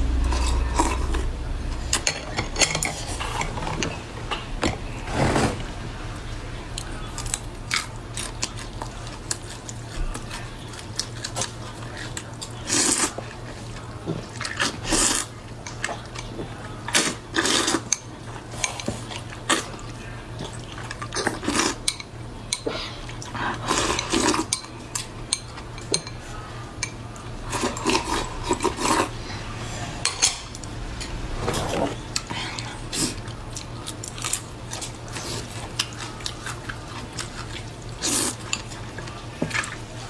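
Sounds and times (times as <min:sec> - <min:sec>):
wet chewing and slurping: 0:27.1 - 0:40.0.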